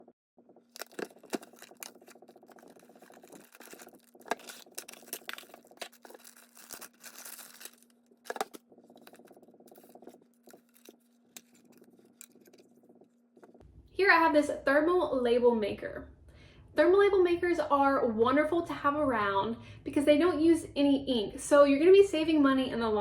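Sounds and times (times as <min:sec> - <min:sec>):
steady low hum: 0:00.0 - 0:18.1
packaging rustling: 0:00.7 - 0:12.8.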